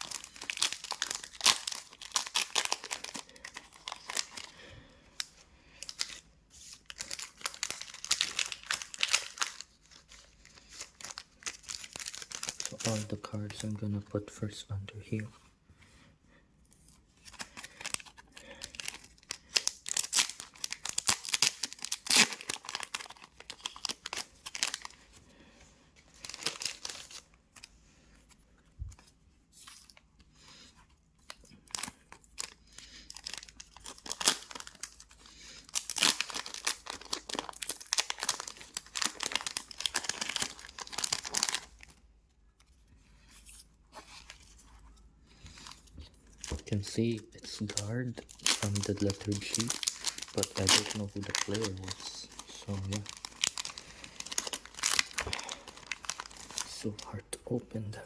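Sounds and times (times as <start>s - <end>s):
card pack wrappers tearing and crinkling: 0.0s - 4.6s, 5.2s - 13.8s, 17.2s - 25.1s, 26.1s - 27.7s, 31.2s - 42.0s, 45.5s - 57.2s.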